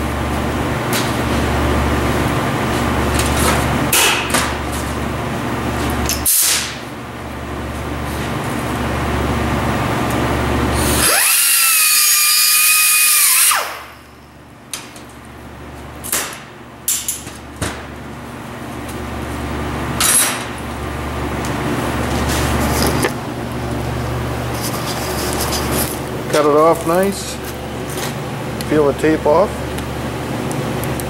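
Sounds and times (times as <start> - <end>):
power tool whining: 10.7 - 14.1.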